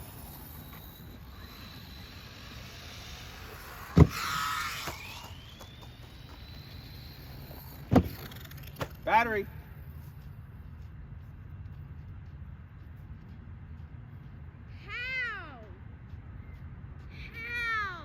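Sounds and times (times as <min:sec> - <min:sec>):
electric motor whining: 0:00.0 - 0:09.1
toy truck landing thud: 0:03.9 - 0:05.7.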